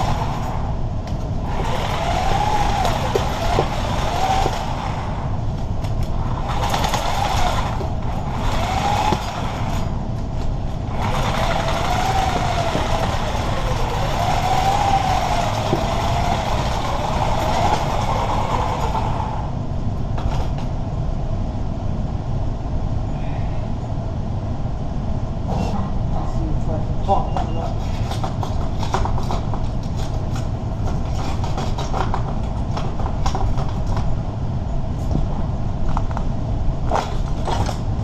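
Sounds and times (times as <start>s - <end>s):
reciprocating saw cutting metal: 1.4s - 5.3s, 6.3s - 10.0s, 10.9s - 19.5s.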